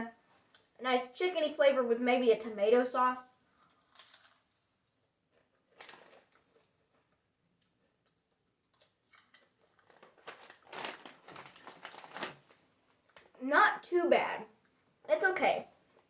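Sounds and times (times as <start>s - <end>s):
potato chips crunching: 8.7s - 12.5s.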